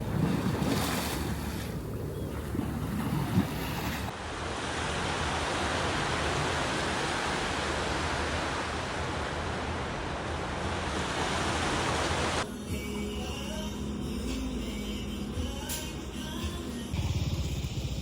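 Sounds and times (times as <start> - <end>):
sea surf rushing: 0.0 - 12.4.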